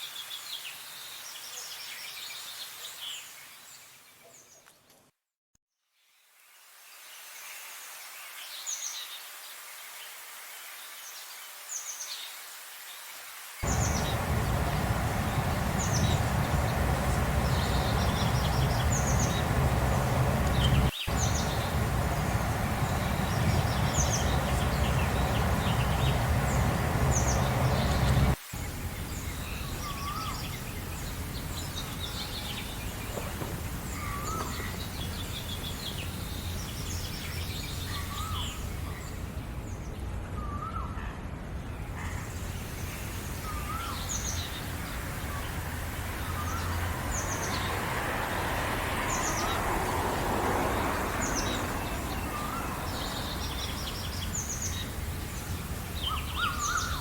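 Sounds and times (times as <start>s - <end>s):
birds chirping and singing: 13.6s - 28.4s, 51.2s - 57.0s
loud low rumbling: 13.6s - 29.1s.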